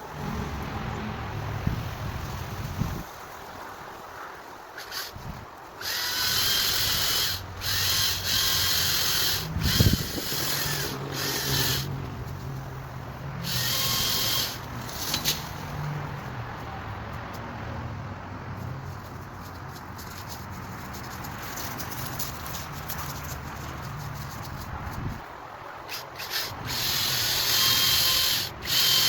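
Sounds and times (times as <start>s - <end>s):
chainsaw running in bursts: 5.8s - 11.9s, 13.4s - 14.6s, 26.2s - 29.0s.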